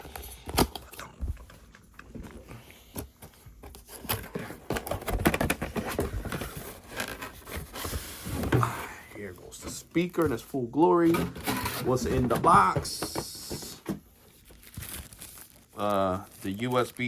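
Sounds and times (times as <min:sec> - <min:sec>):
cardboard packaging scraping and rustling: 0:03.6 - 0:10.4, 0:11.0 - 0:17.0
handling knocks: 0:11.1 - 0:14.0.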